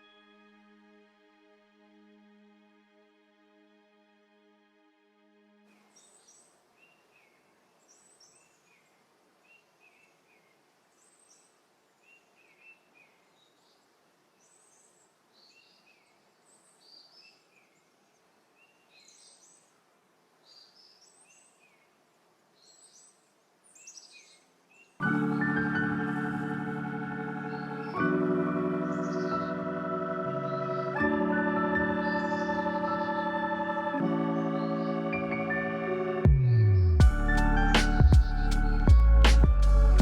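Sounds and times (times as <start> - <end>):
steady background hiss: 5.7 - 35.4
bird chirping: 5.8 - 19.8, 20.4 - 40.0.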